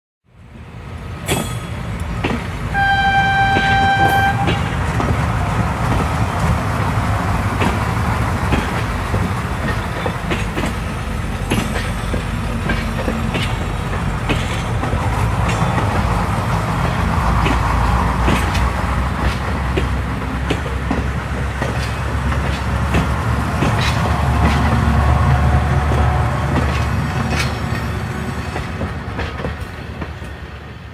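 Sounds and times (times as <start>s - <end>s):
train rumbling: 0.3s - 30.9s
train horn: 2.7s - 4.8s.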